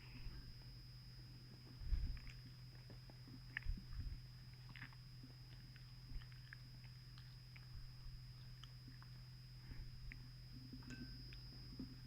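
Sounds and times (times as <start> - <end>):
low electrical hum: 0.0 - 12.0
person chewing food: 2.1 - 9.3.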